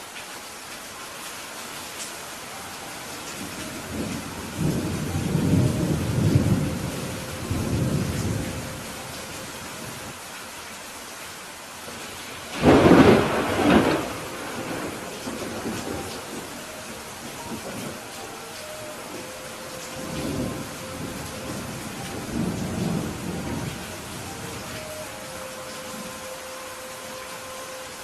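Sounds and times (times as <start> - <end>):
rain falling: 0.0 - 28.0
thunder rumbling: 3.4 - 10.1, 12.5 - 26.3
sharp thunderclap: 12.6 - 15.8.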